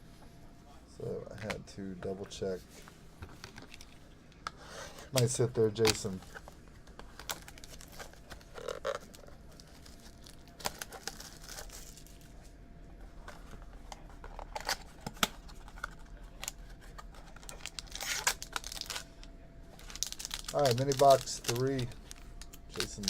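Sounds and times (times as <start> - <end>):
trading cards rustling: 4.9 - 12.5, 13.2 - 23.0
packaging crinkling and tearing: 5.1 - 12.4, 13.3 - 23.0.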